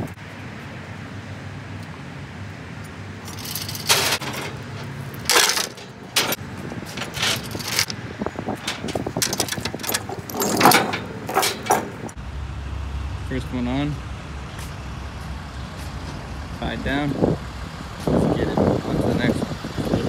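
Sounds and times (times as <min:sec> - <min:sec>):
chains rattling and clanking: 0:03.2 - 0:12.2.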